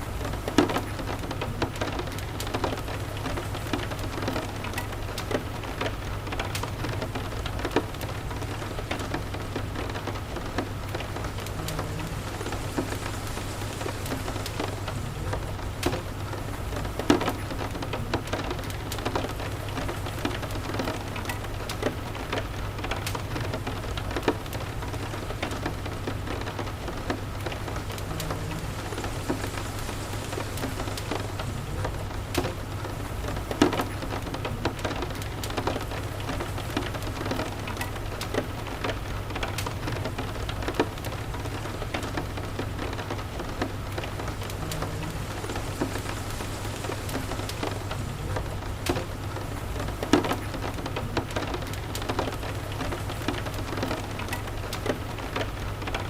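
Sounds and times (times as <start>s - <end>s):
fireplace crackles and pops: 0.0s - 56.0s
steady rain: 0.0s - 56.0s
low steady rumble: 42.5s - 53.0s.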